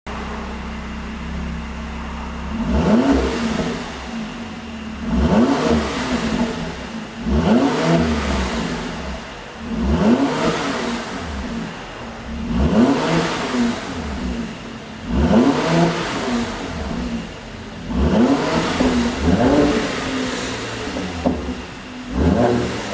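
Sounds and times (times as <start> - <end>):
car engine revving: 0.1 - 22.9
exhaust pops and crackles: 14.1 - 22.9.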